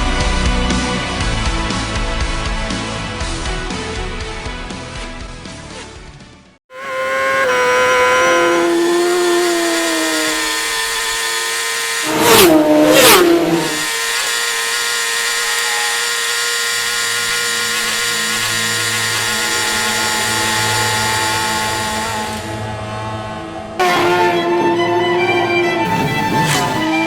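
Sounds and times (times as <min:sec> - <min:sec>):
motorcycles passing by: 0:06.7 - 0:13.8
racing motorcycle engines whining: 0:06.7 - 0:27.0.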